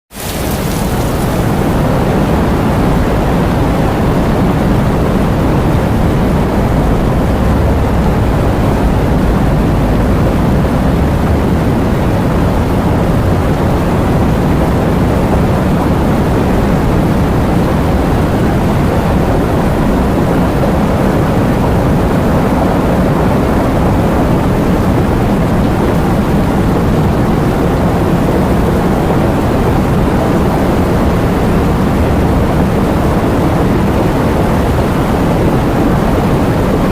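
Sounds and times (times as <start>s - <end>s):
steady heavy rain: 0.1s - 36.9s.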